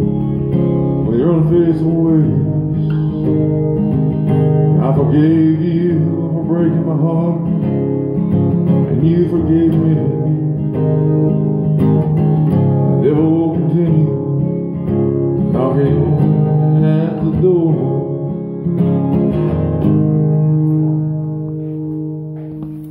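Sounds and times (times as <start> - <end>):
guitar strumming chords: 0.0 - 22.9
person singing wordlessly: 1.0 - 3.3, 4.8 - 7.5, 8.9 - 10.3, 13.0 - 14.4, 15.5 - 18.2.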